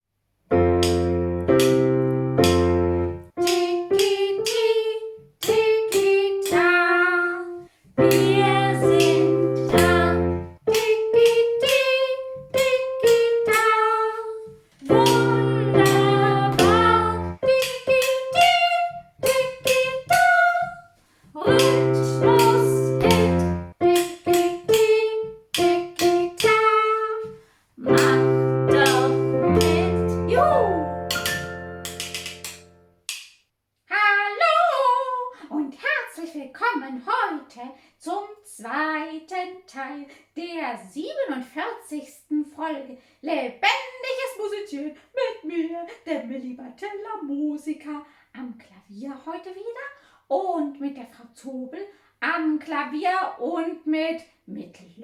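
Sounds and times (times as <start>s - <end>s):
piano chords: 0.5s - 4.7s, 5.4s - 20.3s, 21.4s - 32.9s
woman singing: 3.4s - 20.8s, 21.4s - 31.0s, 33.9s - 37.2s.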